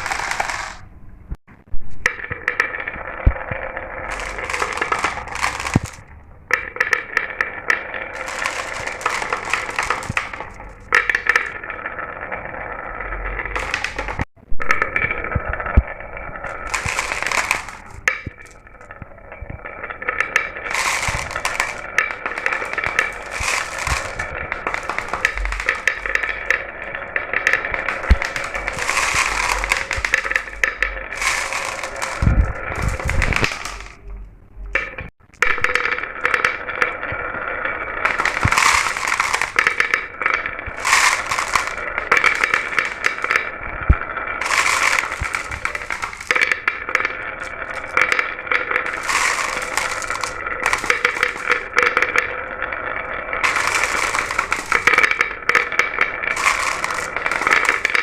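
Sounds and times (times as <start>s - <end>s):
marbles rattling down a track: 0.0s - 0.9s, 2.0s - 34.0s, 34.8s - 58.0s.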